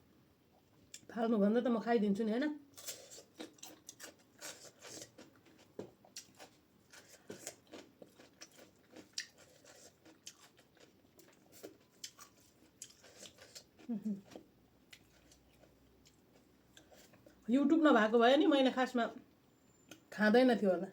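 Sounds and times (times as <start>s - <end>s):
mouth chewing food: 2.8s - 17.5s.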